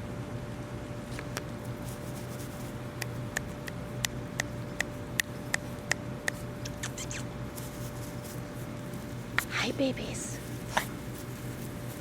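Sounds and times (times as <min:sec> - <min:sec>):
puppy squeaking: 0:06.6 - 0:07.3.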